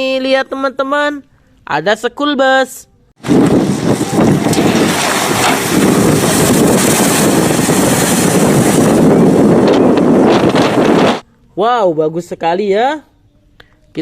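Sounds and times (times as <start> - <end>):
loud rushing noise: 3.2 - 11.2.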